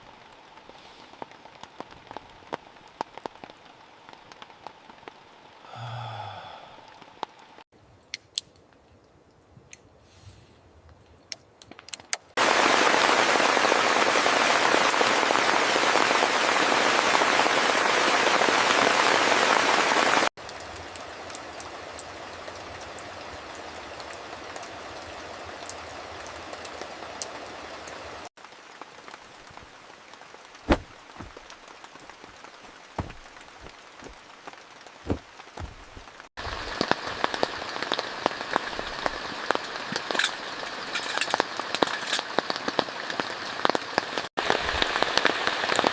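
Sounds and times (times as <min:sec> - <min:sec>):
heavy rain: 0:12.4 - 0:45.9.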